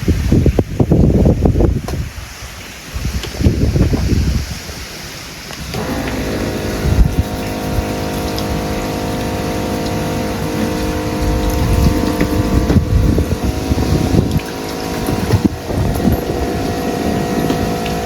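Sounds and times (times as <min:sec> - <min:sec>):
wind buffeting microphone: 0:00.0 - 0:05.0, 0:05.6 - 0:18.0
truck engine idling: 0:05.8 - 0:18.0.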